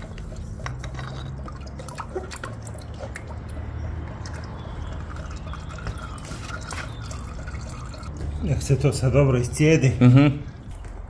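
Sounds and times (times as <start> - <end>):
oil dripping into a drain pan: 0.1 - 8.8.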